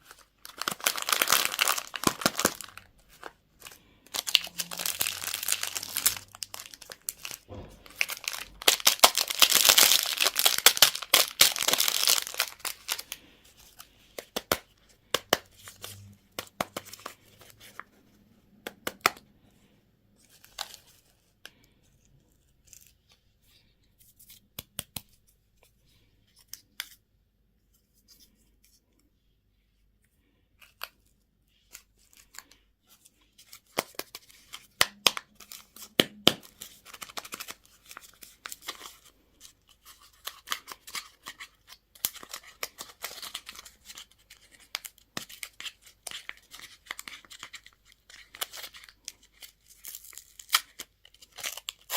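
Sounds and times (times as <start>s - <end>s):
plastic wrapper crinkling: 0.0s - 17.9s, 33.4s - 51.9s.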